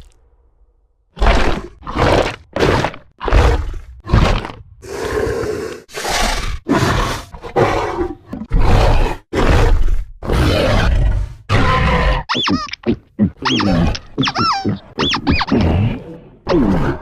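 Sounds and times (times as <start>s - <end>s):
creature roars and growls: 1.2s - 12.3s
high-pitched creature shrieks: 11.5s - 15.7s.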